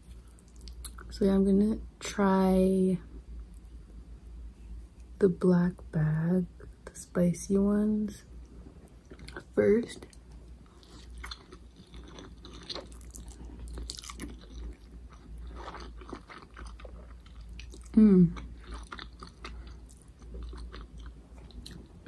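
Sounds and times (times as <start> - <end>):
chewing noodles: 10.1 - 22.0.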